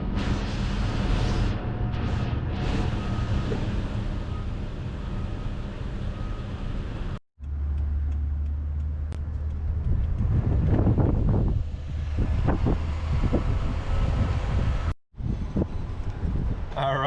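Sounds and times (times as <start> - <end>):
vehicle engine drone: 0.0 - 16.8
wind buffeting microphone: 9.2 - 17.0.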